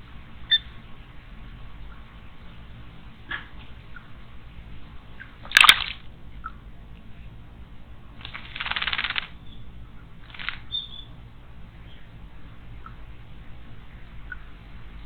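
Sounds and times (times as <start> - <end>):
bird splashing in water: 5.5 - 6.1, 8.2 - 9.4, 10.2 - 10.8.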